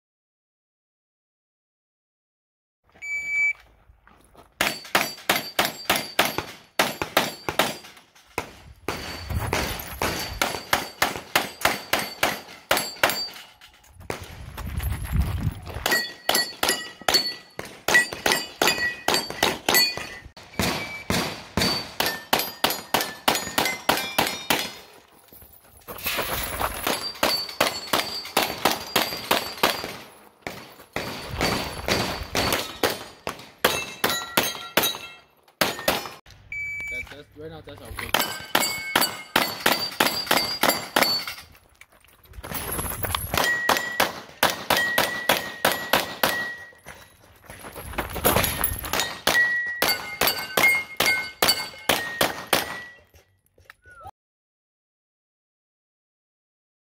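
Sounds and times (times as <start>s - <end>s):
steel targets ringing: 4.6s - 8.0s, 8.9s - 13.8s, 15.8s - 24.6s, 31.1s - 36.2s, 38.1s - 41.5s, 43.4s - 46.9s, 48.9s - 53.2s.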